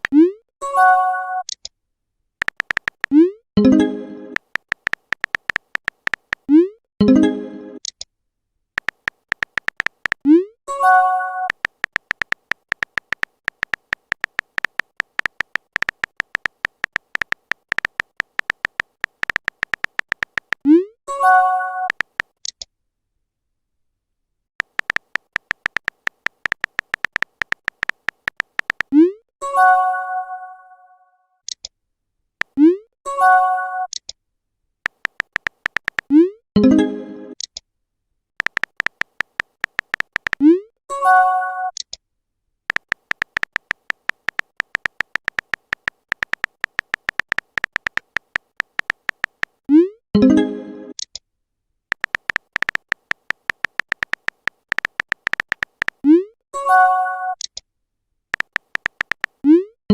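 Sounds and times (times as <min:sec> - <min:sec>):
keyboard tap clicks: 0:02.4 - 0:03.2, 0:04.4 - 0:06.5, 0:08.8 - 0:10.2, 0:11.5 - 0:20.6, 0:21.9 - 0:22.3, 0:24.6 - 0:28.9, 0:34.9 - 0:36.1, 0:38.4 - 0:40.4, 0:42.7 - 0:49.6, 0:51.9 - 0:56.0, 0:58.4 - 0:59.4.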